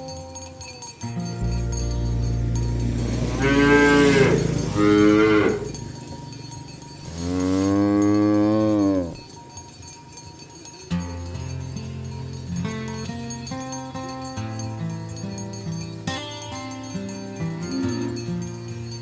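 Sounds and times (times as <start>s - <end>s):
cows mooing: 1.5s - 9.2s, 17.5s - 18.4s.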